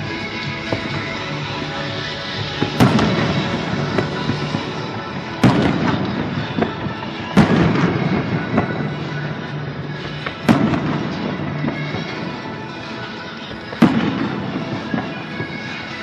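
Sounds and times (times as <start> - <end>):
fireworks bangs with rumbling echo: 0.0 - 16.0
music: 0.0 - 16.0
small firework pops: 5.4 - 9.1, 10.0 - 12.2.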